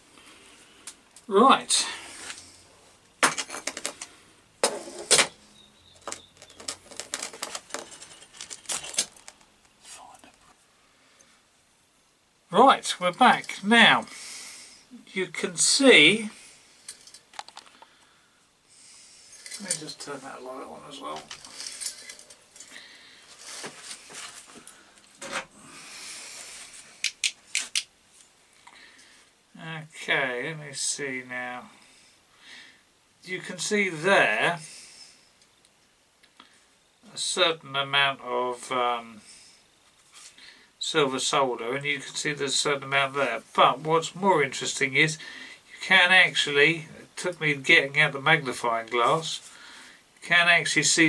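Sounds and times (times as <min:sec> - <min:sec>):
rubbing and rustling handling noise: 0:01.0 - 0:10.8, 0:19.2 - 0:29.2, 0:39.8 - 0:40.4
objects clicking and knocking: 0:03.2 - 0:10.4.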